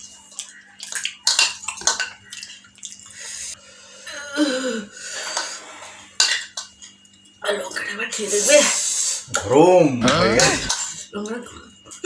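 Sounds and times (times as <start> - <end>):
person moaning: 9.3 - 10.8.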